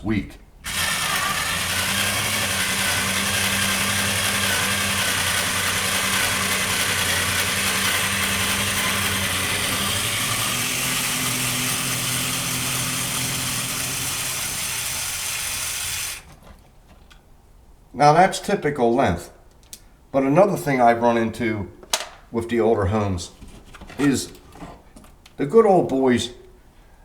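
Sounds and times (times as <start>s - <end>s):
power screwdriver motor whine: 0.6s - 16.4s.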